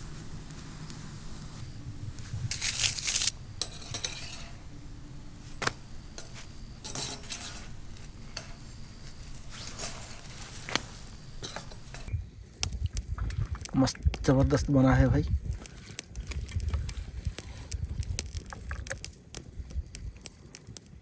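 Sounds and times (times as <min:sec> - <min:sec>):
utensil scraping in a pan: 0:00.0 - 0:12.1
metal clinks: 0:02.5 - 0:12.1.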